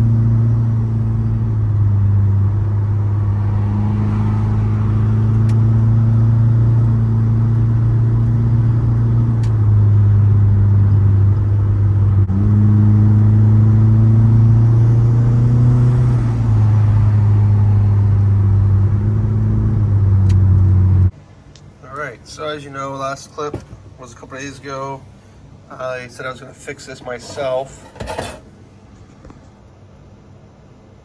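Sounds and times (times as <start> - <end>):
car engine droning: 0.0 - 21.1.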